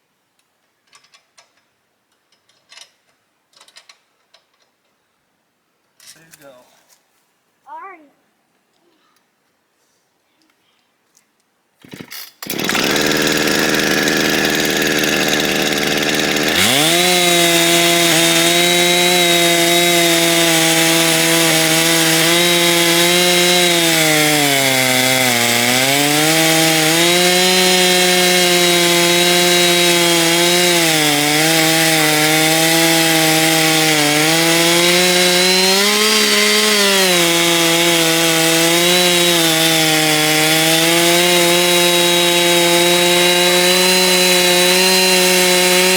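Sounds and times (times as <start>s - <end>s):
chainsaw milling a log: 11.8s - 45.9s.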